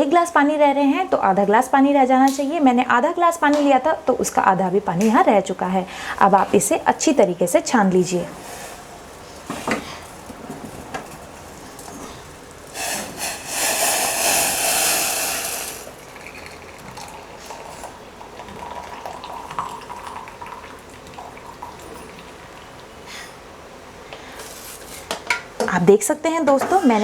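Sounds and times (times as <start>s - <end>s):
liquid pouring into a glass: 12.9s - 22.4s.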